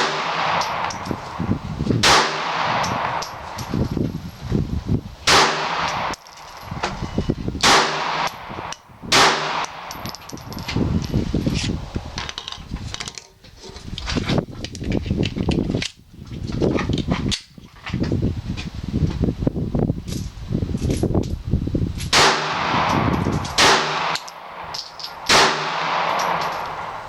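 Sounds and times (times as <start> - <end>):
pistol shots ringing out: 0.0 - 1.0, 2.0 - 3.4, 5.3 - 6.2, 7.6 - 10.0, 22.1 - 27.0
rustling and clatter: 9.8 - 18.8, 20.1 - 21.4, 26.0 - 26.8.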